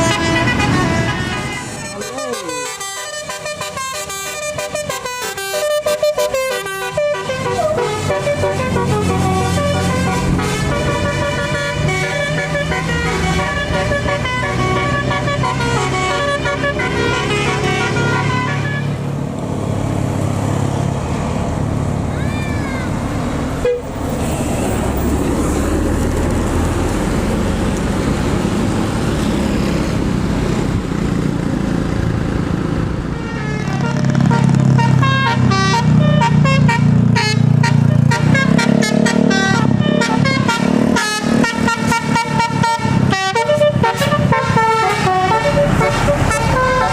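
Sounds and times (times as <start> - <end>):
multi-tone bus horn melody: 0.0 - 19.1, 23.6 - 24.8, 33.0 - 46.9
heavy engine rumble: 0.0 - 46.9
road noise: 0.0 - 46.9.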